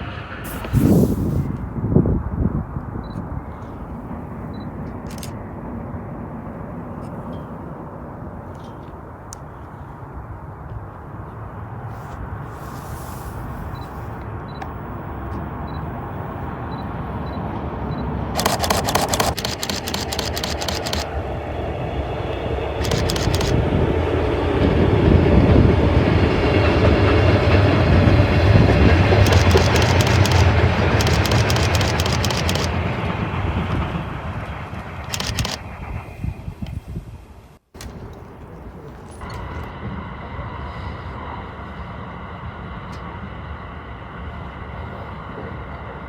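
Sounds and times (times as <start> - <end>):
freight train rumbling past: 0.0 - 46.0
bursts of rapid clicks: 18.4 - 21.1, 22.8 - 23.6, 29.1 - 32.8, 35.0 - 35.6.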